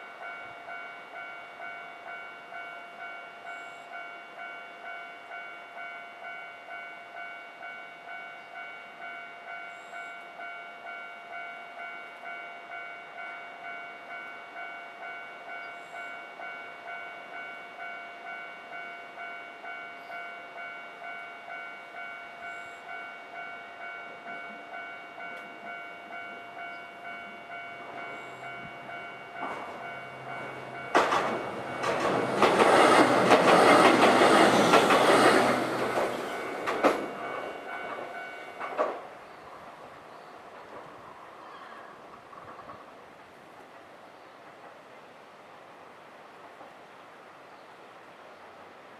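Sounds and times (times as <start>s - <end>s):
train wheels on rails: 19.6s - 45.2s.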